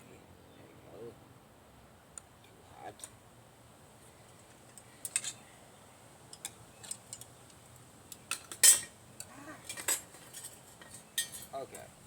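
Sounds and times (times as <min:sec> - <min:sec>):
metal tongs clinking on metal: 0:08.3 - 0:08.9, 0:09.7 - 0:11.6.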